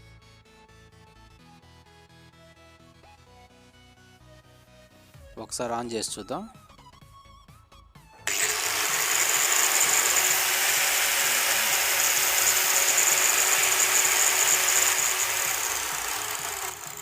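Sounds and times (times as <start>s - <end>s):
angle grinder whining: 8.3s - 17.0s.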